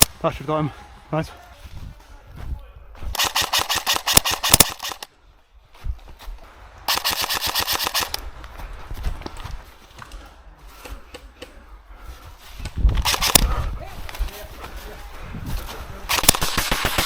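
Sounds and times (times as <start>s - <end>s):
airsoft rifle firing bursts: 3.2s - 5.1s, 6.9s - 8.2s, 13.0s - 13.5s, 16.1s - 17.0s.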